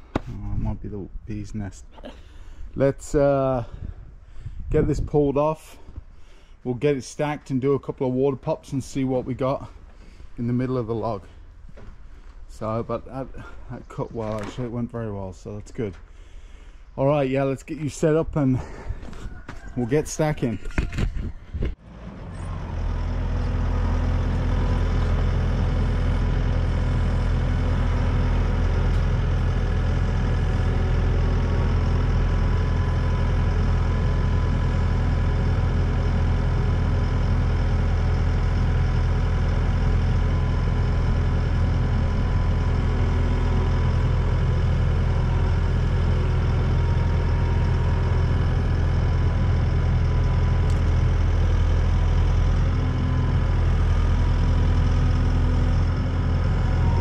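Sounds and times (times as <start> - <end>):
engine idling: 21.9 - 57.0.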